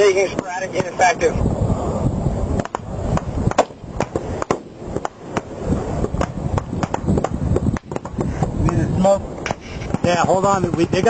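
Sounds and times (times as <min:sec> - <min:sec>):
wind rumbling on microphone: 0:00.0 - 0:11.0.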